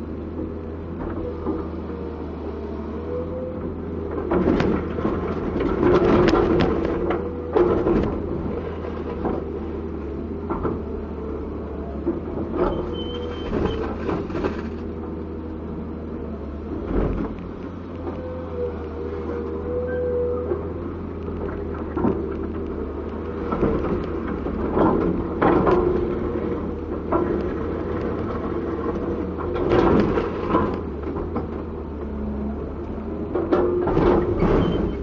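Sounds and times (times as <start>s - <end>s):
excavator diesel engine: 0.0s - 35.0s.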